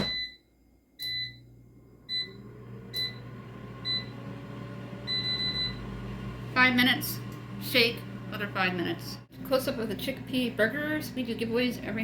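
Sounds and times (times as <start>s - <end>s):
air fryer beeping: 0.0s - 0.4s, 1.0s - 8.7s
fan humming: 1.8s - 12.0s.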